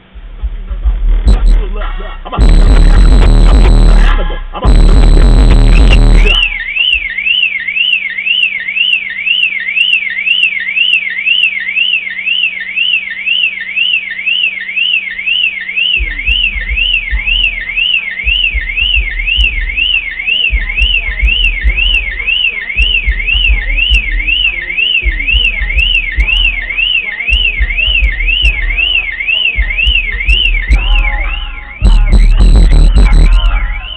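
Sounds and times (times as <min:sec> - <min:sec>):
low deep pulses: 0:00.0 - 0:07.1, 0:16.0 - 0:33.9
music: 0:00.0 - 0:07.2, 0:15.3 - 0:33.9
car alarm siren wailing: 0:02.4 - 0:33.9.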